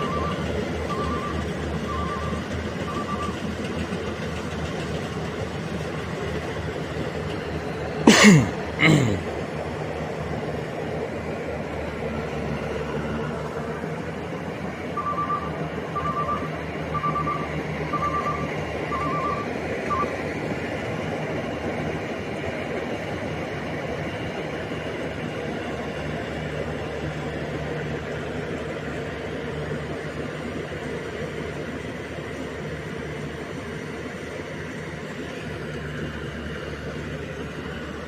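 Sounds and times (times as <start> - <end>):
reversing alarm beeping: 0.0 - 3.4, 14.9 - 20.2
combine harvester engine running: 0.0 - 38.0.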